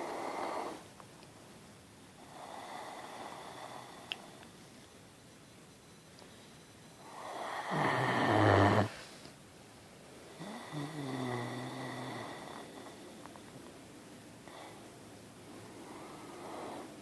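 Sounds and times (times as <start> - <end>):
dog snoring: 0.0 - 0.8, 2.2 - 4.4, 7.0 - 9.0, 10.3 - 13.1, 14.4 - 14.9, 15.6 - 17.0
steady low hum: 0.0 - 17.0.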